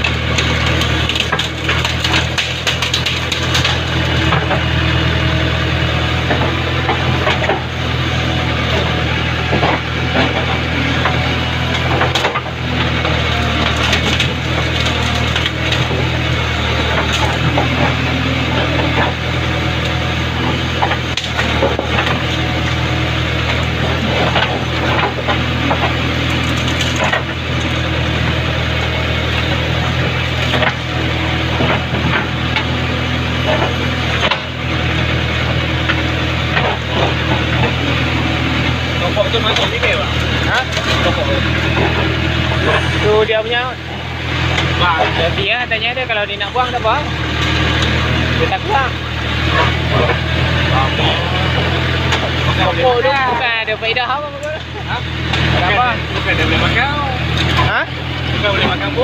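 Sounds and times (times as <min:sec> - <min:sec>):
wood cracking and snapping: 0:00.0 - 0:04.7, 0:09.5 - 0:42.8
diesel engine running: 0:00.0 - 0:59.0.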